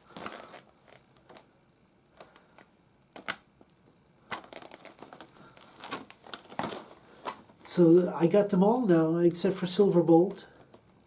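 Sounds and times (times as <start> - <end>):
box rustling: 4.3 - 7.6.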